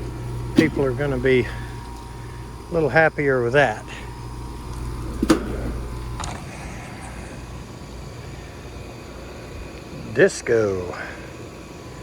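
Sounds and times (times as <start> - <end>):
air conditioner humming: 0.0 - 12.0
sharp knocks: 5.2 - 5.8.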